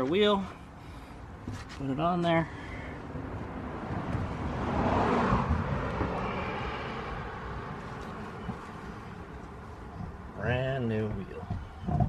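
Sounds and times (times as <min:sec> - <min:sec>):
vehicle passing by: 0:03.0 - 0:09.7.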